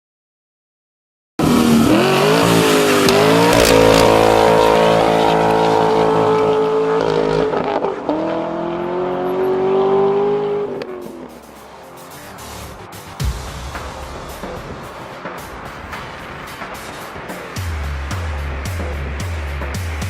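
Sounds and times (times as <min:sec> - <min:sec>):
car engine accelerating hard: 0:01.4 - 0:11.5.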